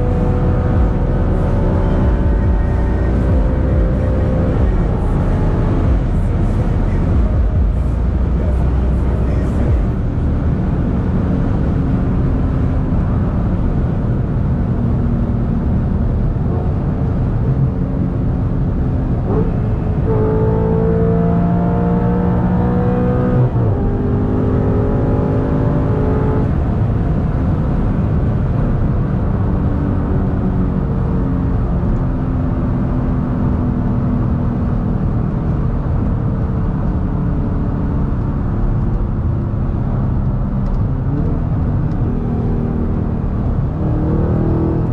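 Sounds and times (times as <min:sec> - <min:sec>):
car engine revving and cruising: 0:00.0 - 0:44.9.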